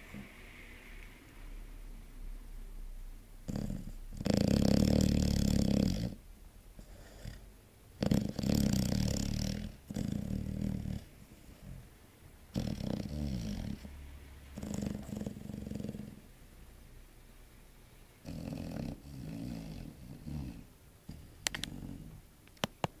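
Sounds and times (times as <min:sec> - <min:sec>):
puppy snoring: 0:03.4 - 0:06.2, 0:06.8 - 0:11.9, 0:12.5 - 0:16.4, 0:18.2 - 0:22.2.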